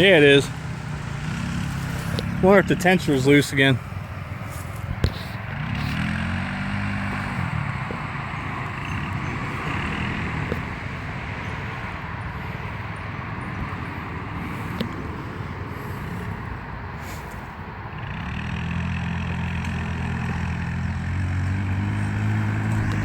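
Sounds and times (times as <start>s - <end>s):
small engine revving: 0.0s - 3.6s, 4.5s - 11.7s, 17.0s - 23.0s.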